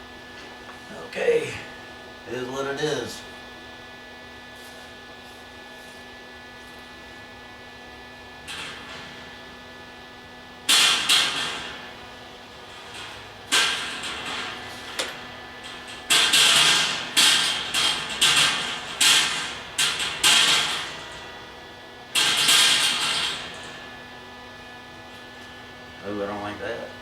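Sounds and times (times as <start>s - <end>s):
arc welder crackling: 8.4s - 26.2s.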